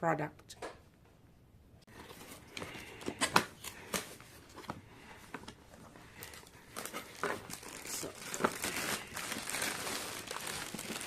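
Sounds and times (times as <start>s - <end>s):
packaging rustling: 2.0s - 11.0s
packaging clicks and crackles: 5.4s - 11.0s.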